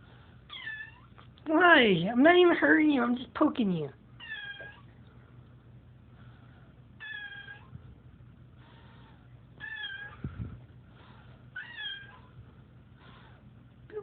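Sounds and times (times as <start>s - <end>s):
cat meowing: 9.6s - 10.3s, 11.6s - 12.3s.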